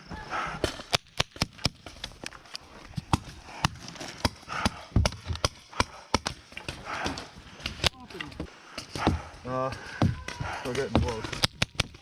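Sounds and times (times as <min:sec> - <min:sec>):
paintball marker shots: 0:00.6 - 0:02.2, 0:10.3 - 0:12.0.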